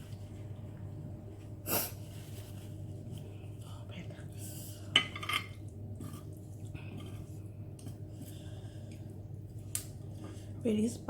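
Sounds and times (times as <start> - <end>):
steady low hum: 0.0 - 11.0
person chewing noodles: 6.2 - 10.0.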